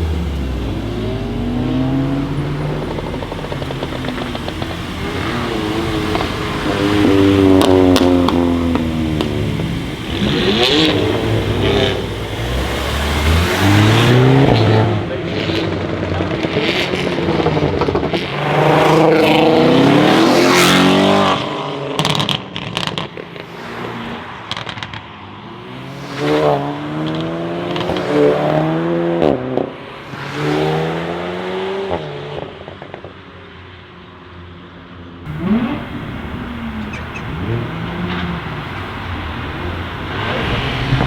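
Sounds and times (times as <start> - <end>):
exhaust popping and crackling: 0.0 - 18.4, 35.3 - 41.0
car engine accelerating hard: 0.0 - 22.5, 35.3 - 41.0.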